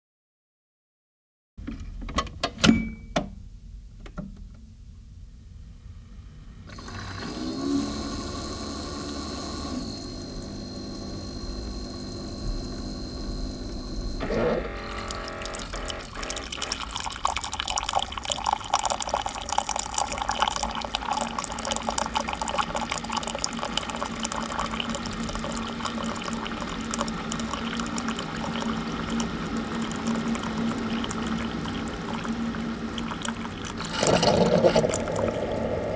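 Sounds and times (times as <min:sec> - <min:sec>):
pump humming: 0:06.7 - 0:35.9
water sputtering into cup: 0:14.3 - 0:35.9.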